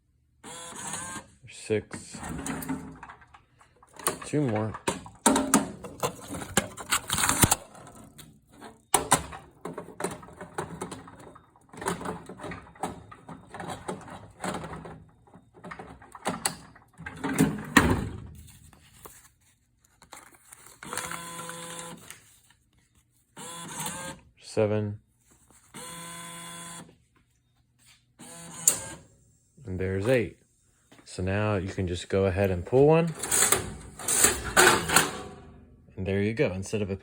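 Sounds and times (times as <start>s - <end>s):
bill acceptor clicks: 0.5s - 1.3s, 1.9s - 18.0s, 20.8s - 22.1s, 23.4s - 24.2s, 28.2s - 29.1s, 32.8s - 35.6s
paper bills rustling: 18.4s - 23.1s.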